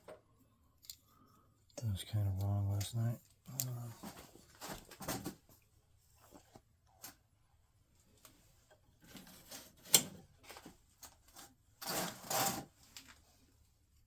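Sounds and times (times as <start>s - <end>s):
rustling scrape: 9.0s - 13.4s.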